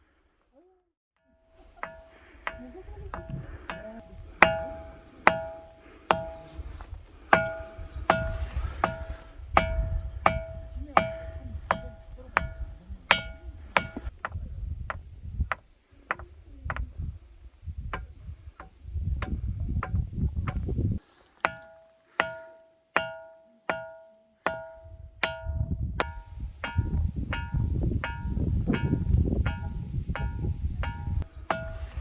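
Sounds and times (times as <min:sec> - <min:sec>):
stone tapping ringing boulder: 0:01.6 - 0:14.4, 0:21.4 - 0:32.0
low rumble: 0:24.9 - 0:32.0.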